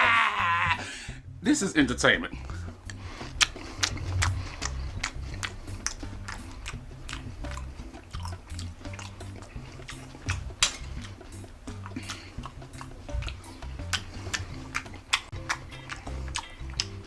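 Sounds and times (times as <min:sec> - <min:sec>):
stepping bass line: 0:00.0 - 0:17.0
percussive beat: 0:02.3 - 0:17.0.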